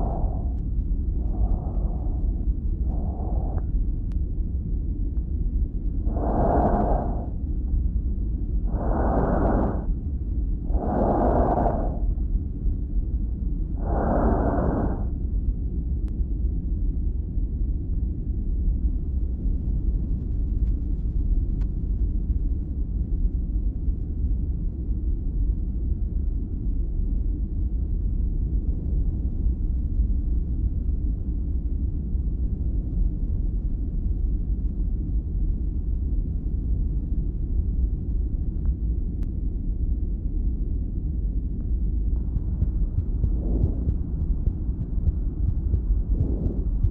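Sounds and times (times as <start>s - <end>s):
low chest rumble: 0.0s - 15.3s, 41.4s - 46.9s.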